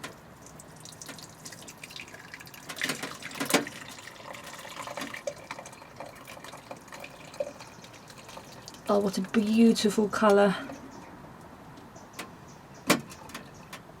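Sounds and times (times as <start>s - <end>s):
liquid splashing and dripping: 0.0s - 9.0s.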